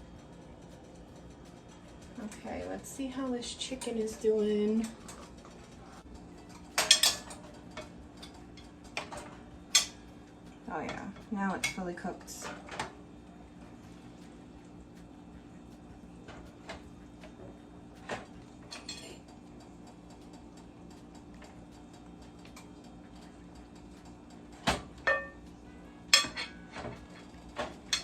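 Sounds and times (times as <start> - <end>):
metal cookware clanking: 3.5 - 10.0, 18.1 - 19.3, 22.4 - 25.4, 26.1 - 28.0.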